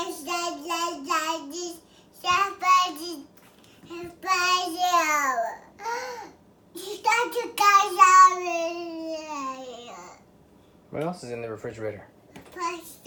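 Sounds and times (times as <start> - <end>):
toddler singing: 0.0 - 3.3, 3.9 - 6.0.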